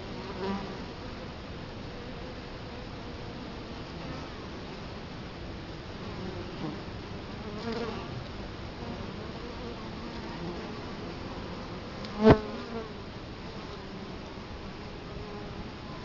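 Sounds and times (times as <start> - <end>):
single bee flying past: 0.0 - 1.2, 8.8 - 14.2
bees buzzing at hive: 0.0 - 5.1, 5.8 - 16.0.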